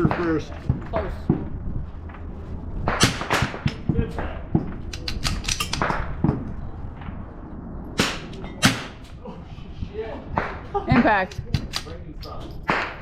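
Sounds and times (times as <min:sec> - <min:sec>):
sharp rifle shots: 0:02.9 - 0:03.8, 0:08.0 - 0:09.0.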